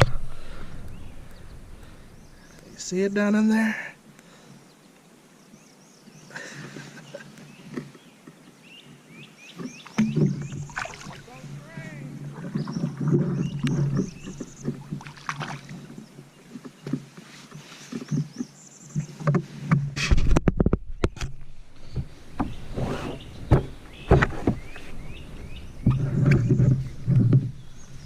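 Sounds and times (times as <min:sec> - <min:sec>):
sharp thumps: 0:10.0 - 0:15.9.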